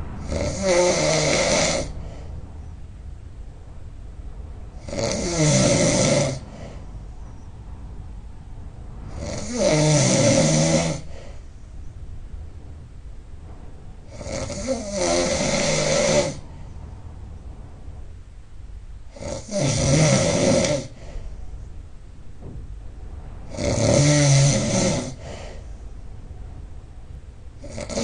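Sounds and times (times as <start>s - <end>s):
person snoring loudly: 0.2s - 2.0s, 4.8s - 6.7s, 9.1s - 11.3s, 14.1s - 16.4s, 19.1s - 21.0s, 23.5s - 25.5s, 27.6s - 28.0s.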